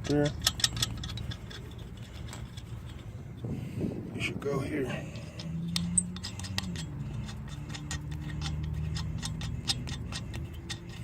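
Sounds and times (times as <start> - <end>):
socket ratchet clicking: 0.0 - 2.7, 5.2 - 11.0.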